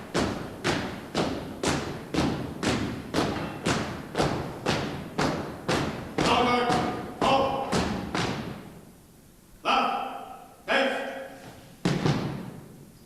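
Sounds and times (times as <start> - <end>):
heavy thumping march beat: 0.0 - 8.8.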